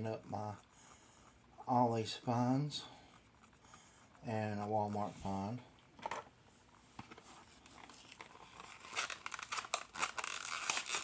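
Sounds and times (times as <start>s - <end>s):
plastic packaging crinkling: 7.8s - 11.0s.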